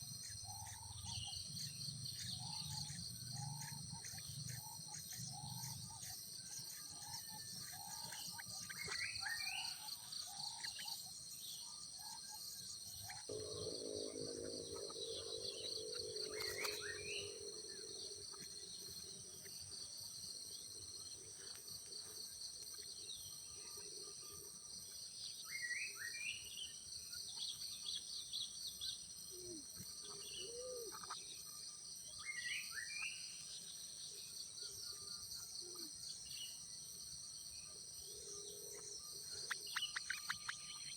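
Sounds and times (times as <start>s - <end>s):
crickets and insects droning: 0.0s - 40.9s
low multi-tone hum: 13.3s - 20.0s
bird chirps and calls: 39.4s - 40.9s.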